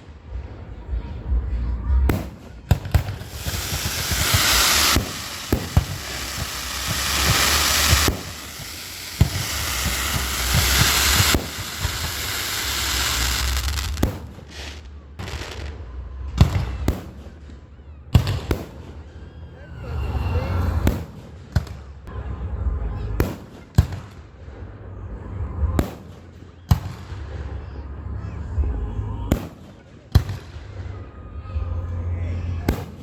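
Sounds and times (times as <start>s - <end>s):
loud hissing blasts: 2.9s - 15.7s.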